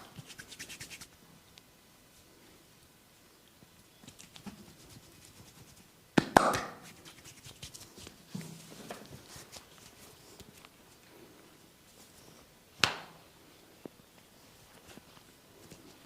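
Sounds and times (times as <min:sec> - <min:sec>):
hands rubbing and tapping: 0:00.0 - 0:01.2, 0:04.0 - 0:10.8.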